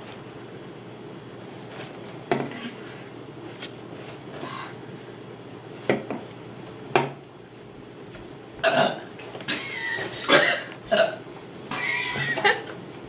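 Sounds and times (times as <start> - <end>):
person burping: 8.6 - 12.4.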